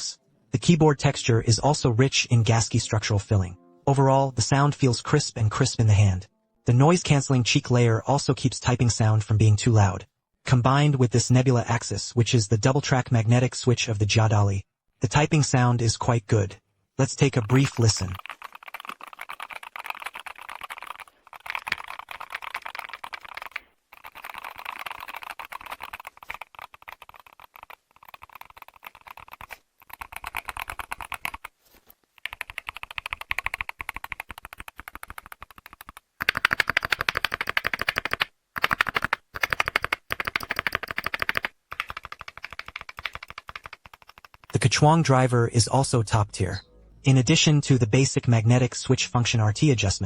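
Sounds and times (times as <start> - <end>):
mechanical keyboard typing: 17.4 - 31.5, 32.2 - 44.6.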